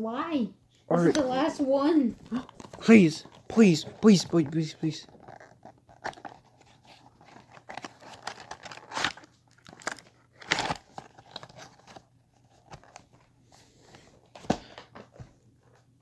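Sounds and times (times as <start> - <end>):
packaging crinkling and tearing: 5.0 - 13.1.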